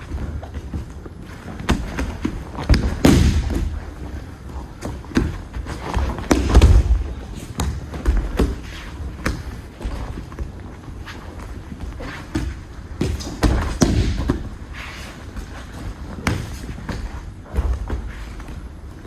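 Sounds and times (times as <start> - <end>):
bodies thudding onto a mat: 1.5 - 4.2, 4.8 - 10.5.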